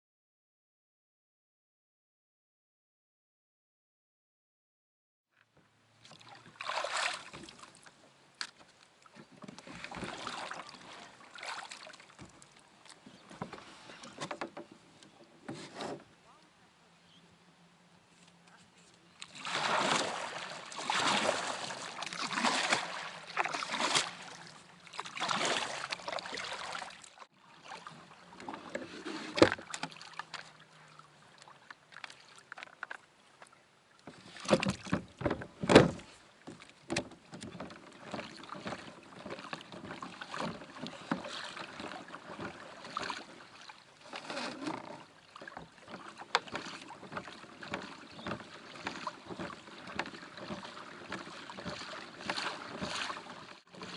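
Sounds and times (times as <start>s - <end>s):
water splashing against kayak hull: 6.0s - 16.2s, 19.2s - 53.9s
sharp knocks on kayak: 34.4s - 41.3s.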